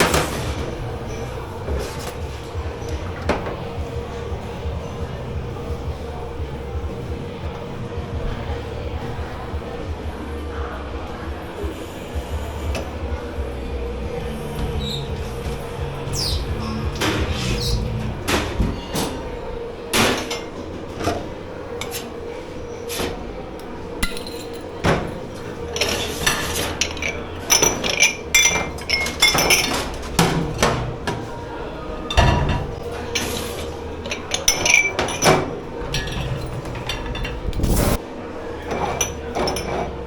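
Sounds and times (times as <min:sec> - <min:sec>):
steady hum: 0:00.0 - 0:40.0
crockery and metal knocking: 0:11.1 - 0:22.1, 0:23.0 - 0:38.0, 0:38.6 - 0:40.0
dishes clinking: 0:22.8 - 0:38.0, 0:38.6 - 0:40.0.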